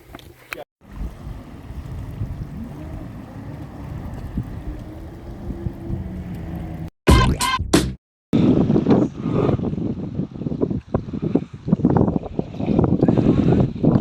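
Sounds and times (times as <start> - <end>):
motorboat engine droning: 0.8 - 6.9.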